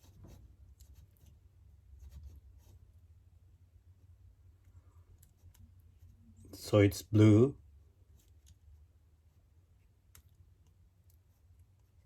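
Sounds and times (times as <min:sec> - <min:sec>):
wires scratching and clicking: 0:00.0 - 0:01.4, 0:04.6 - 0:06.3, 0:08.0 - 0:08.9.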